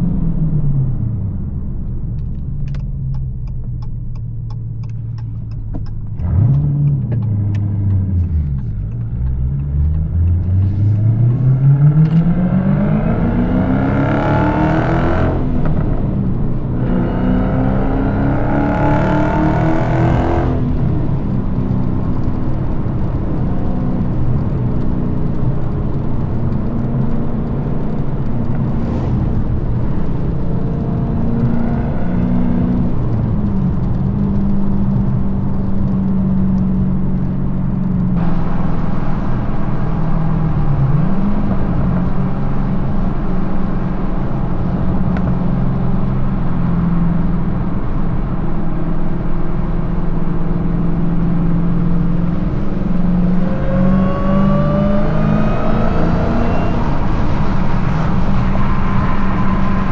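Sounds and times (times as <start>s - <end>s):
car engine revving: 0.0s - 59.9s
exhaust crackles: 1.1s - 42.4s.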